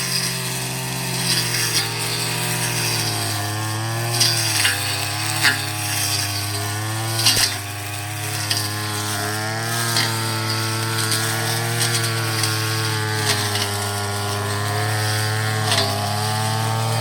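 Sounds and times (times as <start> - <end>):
grass cutter engine running: 0.0 - 17.0
line striking grass: 4.1 - 14.4.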